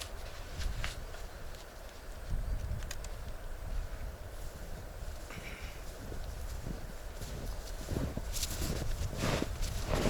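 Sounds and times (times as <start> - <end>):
wind rumble on microphone: 0.0 - 10.0
footsteps crunching in snow: 4.3 - 10.0.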